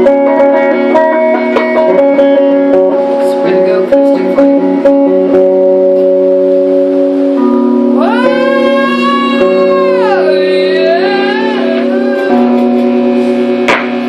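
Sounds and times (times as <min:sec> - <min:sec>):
sustained chord: 0:00.0 - 0:14.0
high wailing sung note: 0:07.4 - 0:13.6.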